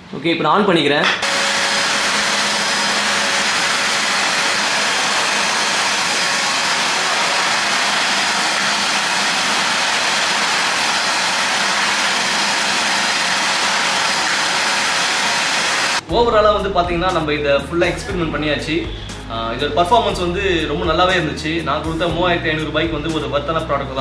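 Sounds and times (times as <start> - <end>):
wet vacuum cleaner sucking water: 1.2 - 16.1.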